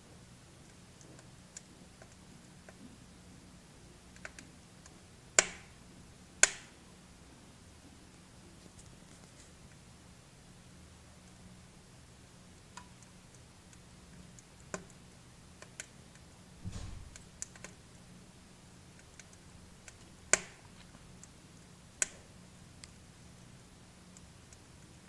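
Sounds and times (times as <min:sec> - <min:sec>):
wood fire crackling: 0:00.1 - 0:25.0
sharp pops of fire: 0:05.4 - 0:05.8, 0:06.4 - 0:06.8, 0:16.6 - 0:17.6, 0:20.0 - 0:20.7.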